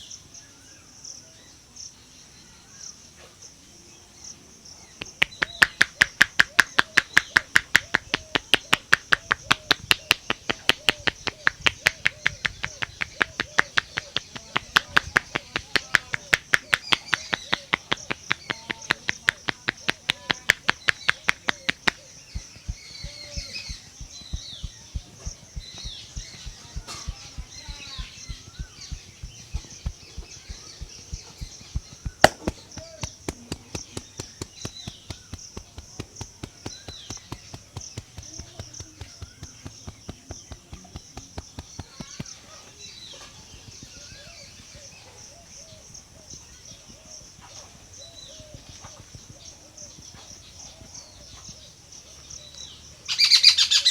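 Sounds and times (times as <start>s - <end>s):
birds chirping: 0.0s - 53.9s
hands patting on a head: 5.0s - 44.6s, 48.3s - 51.7s.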